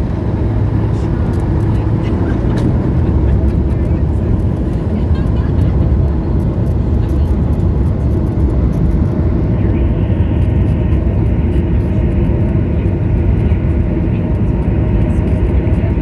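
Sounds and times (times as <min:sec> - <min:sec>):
airliner cabin engine rumble: 0:00.0 - 0:16.0.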